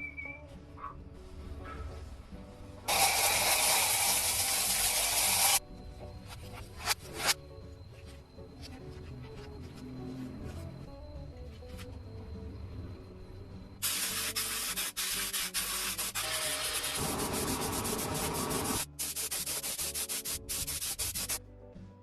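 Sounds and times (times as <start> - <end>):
background music: 0.0 - 22.0
sanding rusty metal: 2.9 - 5.6, 13.8 - 21.4.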